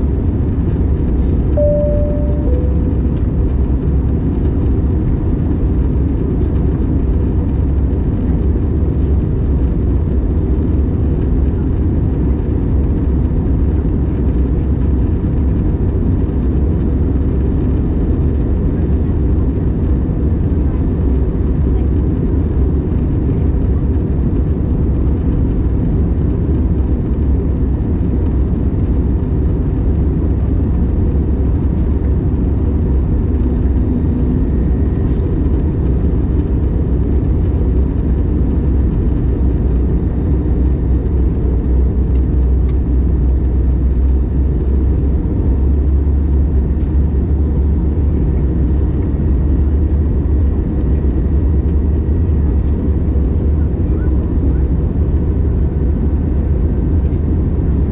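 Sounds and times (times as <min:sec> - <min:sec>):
airliner cabin rumble: 0:00.0 - 0:57.9
faint steady hum: 0:01.5 - 0:03.6.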